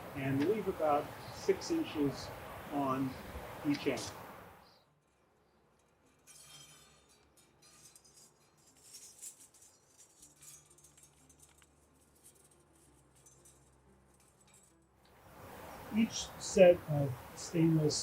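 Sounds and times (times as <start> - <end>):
strap handling clicks and rustles: 5.0 - 15.2.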